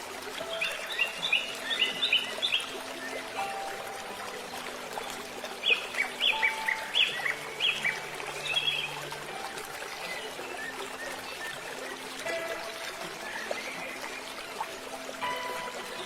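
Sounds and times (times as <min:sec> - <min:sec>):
bird chirping: 0:05.6 - 0:09.0.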